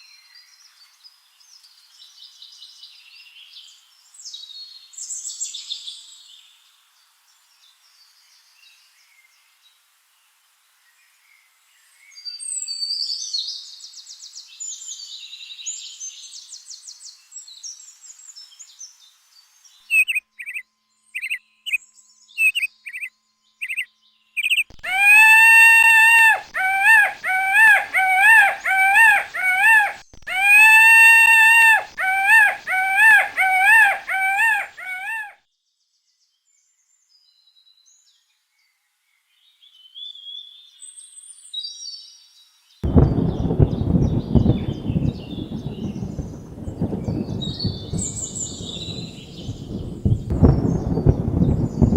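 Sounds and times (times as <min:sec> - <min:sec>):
high-pitched chirping and trills: 0:24.4 - 0:35.3
peacock calling: 0:24.8 - 0:35.4.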